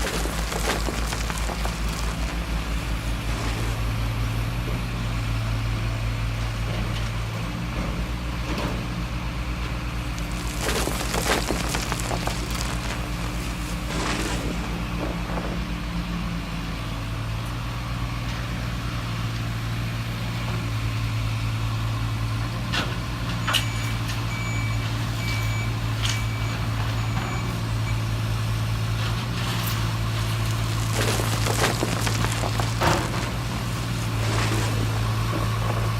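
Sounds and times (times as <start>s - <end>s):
simulated diesel truck engine: 0.0s - 35.9s
reversing beeper: 23.4s - 28.2s.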